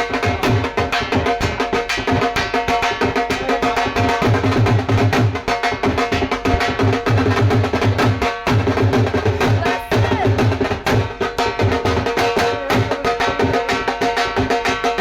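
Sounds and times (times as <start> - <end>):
dhol drumming: 0.0 - 15.0.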